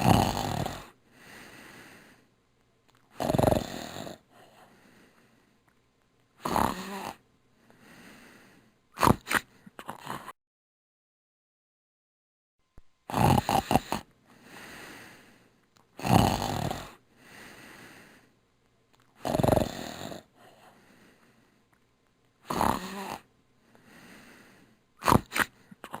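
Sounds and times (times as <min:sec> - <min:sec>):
person snoring: 0:00.0 - 0:02.2, 0:03.1 - 0:05.3, 0:06.4 - 0:10.4, 0:13.1 - 0:18.3, 0:19.2 - 0:21.4, 0:22.4 - 0:26.0.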